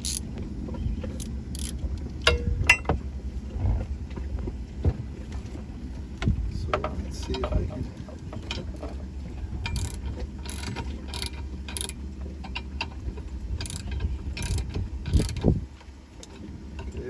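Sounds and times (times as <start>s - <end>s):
socket ratchet clicking: 0.0s - 0.2s, 1.2s - 1.8s.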